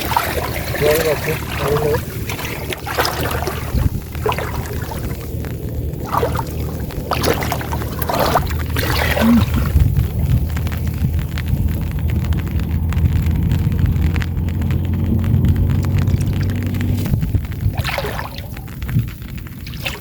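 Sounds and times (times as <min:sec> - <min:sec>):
water splashing: 0:00.0 - 0:20.0
small engine droning: 0:10.4 - 0:17.2.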